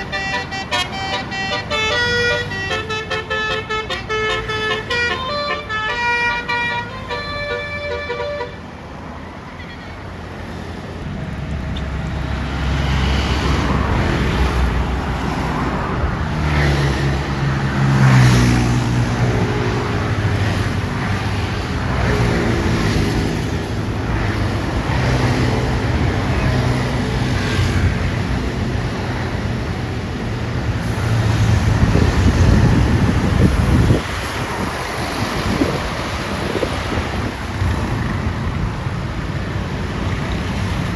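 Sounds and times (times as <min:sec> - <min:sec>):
traffic noise: 0:00.0 - 0:40.9
diesel bus engine accelerating: 0:27.9 - 0:40.9.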